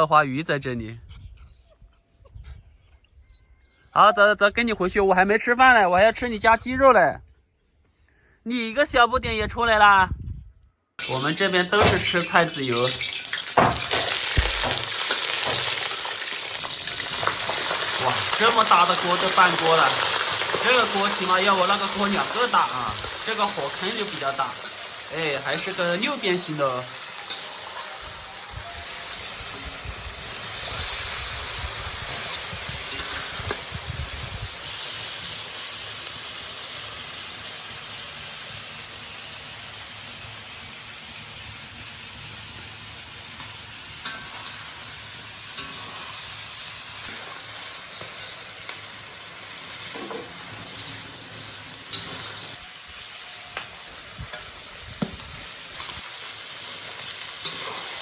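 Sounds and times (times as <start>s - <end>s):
chicken sizzling in a wok: 11.0s - 58.0s
stirring knocks: 13.5s - 16.1s.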